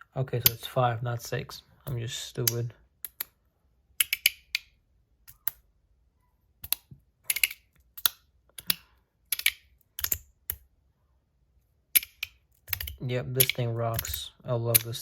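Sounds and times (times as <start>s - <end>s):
fidget slider clicks: 6.6s - 10.6s.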